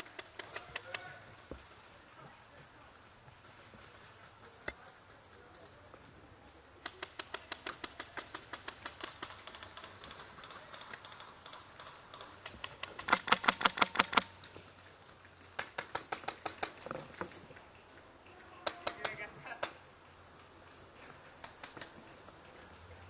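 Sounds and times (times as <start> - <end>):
airsoft rifles firing rapidly: 12.8 - 14.3.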